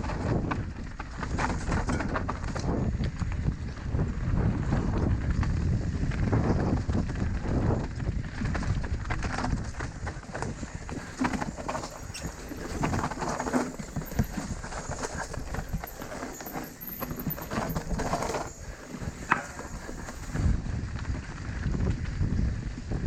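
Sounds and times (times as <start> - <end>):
bike clattering over dirt trail: 0.0 - 3.4, 10.5 - 20.5.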